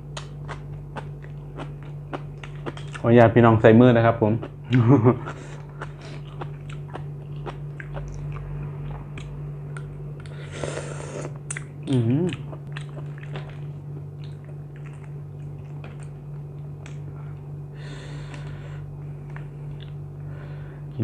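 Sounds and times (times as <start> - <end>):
low hum: 0.0 - 21.0
chewing and crunching: 0.1 - 3.1, 4.4 - 17.5, 19.2 - 20.1
person humming mm: 10.5 - 12.5.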